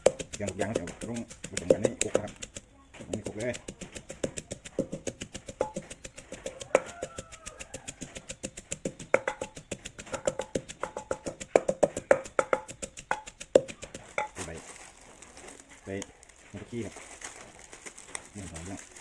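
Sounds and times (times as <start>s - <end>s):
pestle knocking in a mortar: 0.0s - 14.5s.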